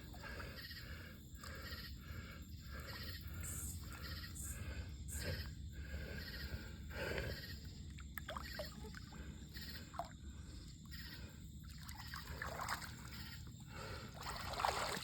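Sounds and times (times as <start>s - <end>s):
water sloshing and trickling: 7.7s - 15.0s
small water splashes: 7.9s - 10.2s, 11.6s - 15.0s.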